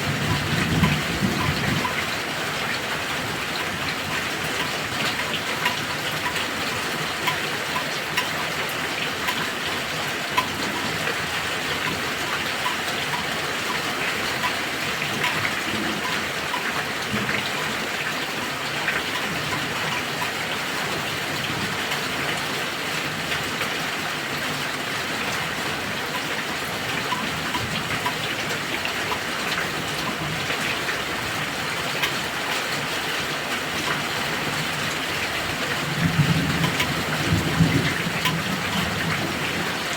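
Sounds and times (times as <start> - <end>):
heavy rain: 0.0 - 39.9
faint regular ticking: 0.3 - 2.1, 3.4 - 17.8, 27.0 - 30.4.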